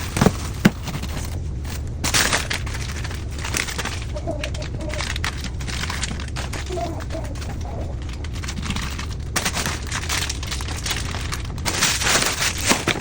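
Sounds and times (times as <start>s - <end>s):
objects knocking and clattering: 0.0s - 13.0s
steady low hum: 0.0s - 13.0s.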